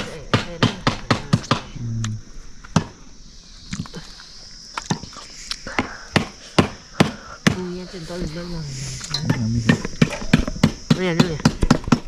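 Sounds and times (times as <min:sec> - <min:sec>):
sharp knocks on wood: 0:00.3 - 0:01.7, 0:02.7 - 0:03.0, 0:05.8 - 0:07.7, 0:09.7 - 0:12.0.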